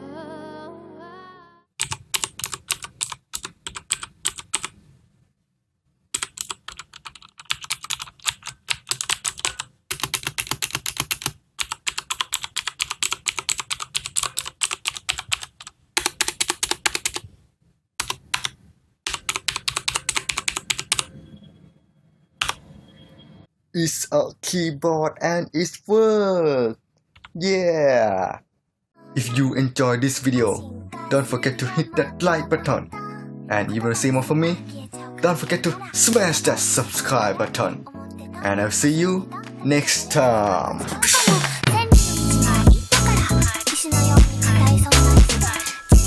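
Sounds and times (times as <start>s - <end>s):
clicky mechanical keyboard typing: 1.8s - 4.8s, 6.2s - 17.2s, 18.0s - 21.1s, 22.4s - 22.6s.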